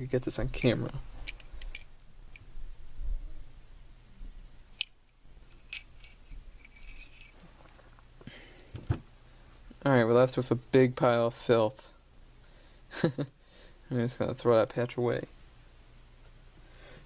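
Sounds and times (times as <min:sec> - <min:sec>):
soft clicks and rustles of handling: 0:04.8 - 0:08.2.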